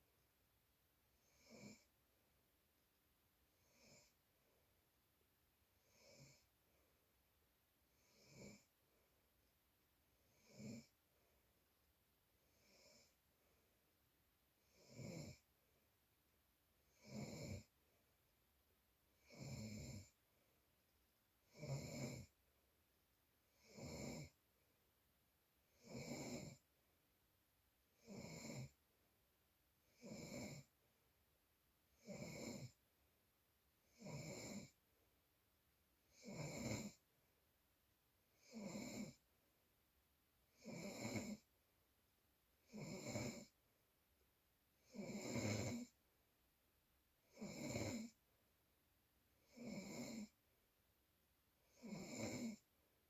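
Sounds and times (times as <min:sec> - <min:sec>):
snoring: 0:01.2 - 0:01.9, 0:03.6 - 0:04.2, 0:05.8 - 0:06.5, 0:08.0 - 0:08.7, 0:10.3 - 0:11.0, 0:12.5 - 0:13.2, 0:14.6 - 0:15.5, 0:16.9 - 0:17.7, 0:19.2 - 0:20.2, 0:21.4 - 0:22.3, 0:23.5 - 0:24.4, 0:25.7 - 0:26.6, 0:28.0 - 0:28.8, 0:29.9 - 0:30.7, 0:32.0 - 0:32.8, 0:33.9 - 0:34.8, 0:36.1 - 0:37.0, 0:38.4 - 0:39.2, 0:40.5 - 0:41.5, 0:42.6 - 0:43.6, 0:44.8 - 0:46.0, 0:47.3 - 0:48.2, 0:49.4 - 0:50.4, 0:51.6 - 0:52.7.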